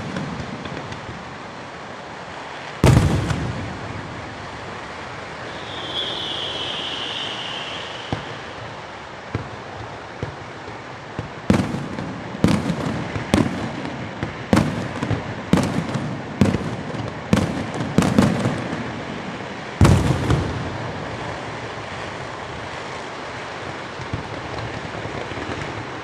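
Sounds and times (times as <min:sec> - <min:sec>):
firework shells bursting: 0:04.8 - 0:10.0.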